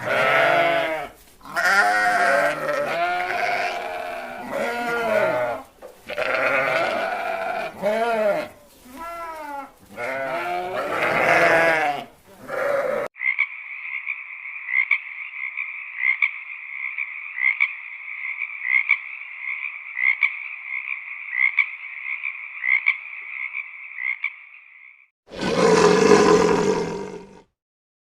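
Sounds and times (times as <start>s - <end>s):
animal crying: 0.0s - 13.1s, 25.3s - 27.4s.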